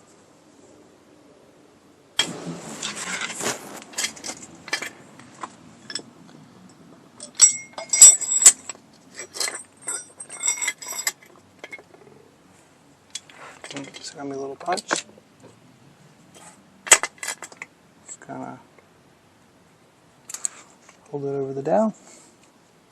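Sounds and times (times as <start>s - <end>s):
metal tools clattering: 2.2s - 6.1s, 7.2s - 12.2s, 13.2s - 15.1s, 16.8s - 18.2s.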